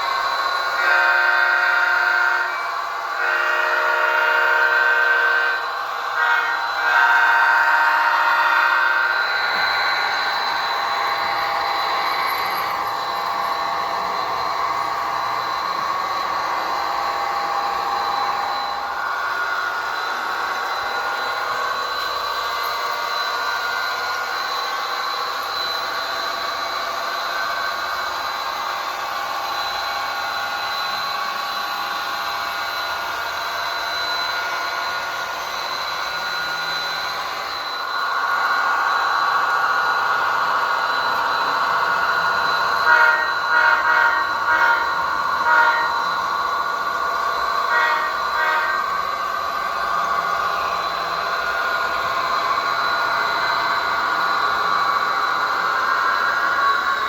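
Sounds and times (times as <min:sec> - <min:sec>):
model train diesel engine sound: 0:00.0 - 0:57.0
train horn blasts: 0:00.8 - 0:09.8, 0:42.7 - 0:46.4, 0:47.7 - 0:49.2.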